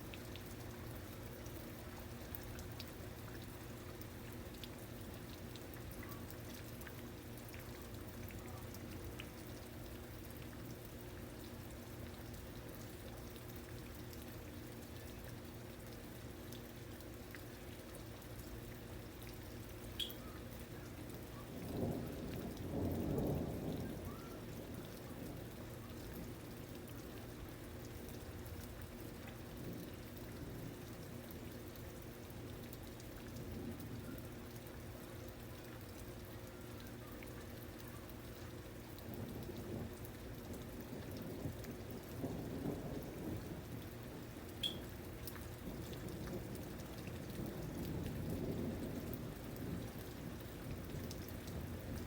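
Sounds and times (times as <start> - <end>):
steady rain falling: 0.0 - 52.0
low rumble of thunder: 19.2 - 52.0.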